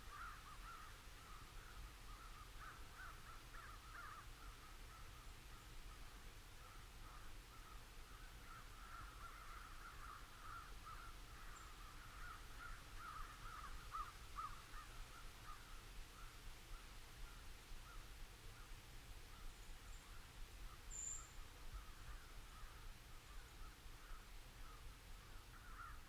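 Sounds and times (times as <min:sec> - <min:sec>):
crows cawing: 0:00.1 - 0:01.0, 0:01.6 - 0:05.0, 0:06.6 - 0:15.8, 0:21.8 - 0:23.4, 0:24.0 - 0:26.0.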